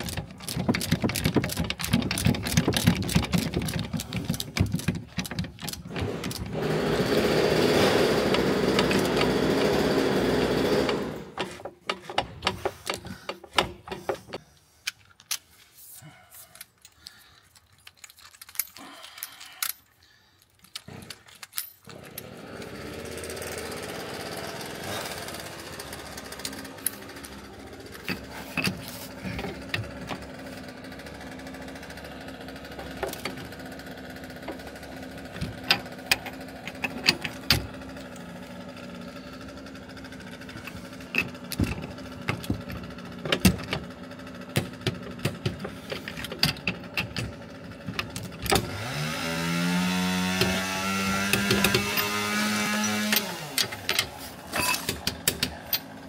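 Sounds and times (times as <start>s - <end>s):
sharp metal knocks and clicks: 0.0s - 6.6s, 10.9s - 14.4s, 35.3s - 37.8s, 41.1s - 48.7s, 50.3s - 55.9s
power tool whine: 5.9s - 11.4s, 21.9s - 43.2s, 47.3s - 56.0s
steady machine hum: 22.2s - 36.7s.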